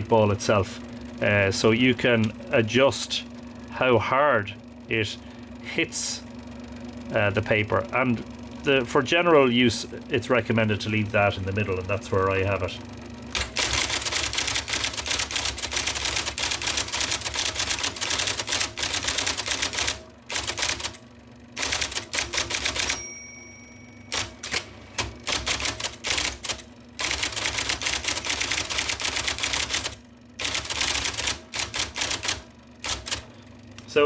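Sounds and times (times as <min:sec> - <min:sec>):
electric typewriter typing: 0:13.3 - 0:21.0, 0:21.6 - 0:23.4, 0:24.1 - 0:33.3.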